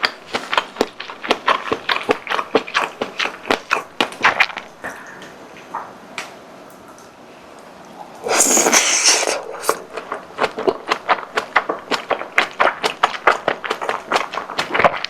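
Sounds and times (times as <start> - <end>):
food rustling: 0.0 - 5.7, 8.3 - 15.0
crisp crackles and crunches: 9.9 - 15.0.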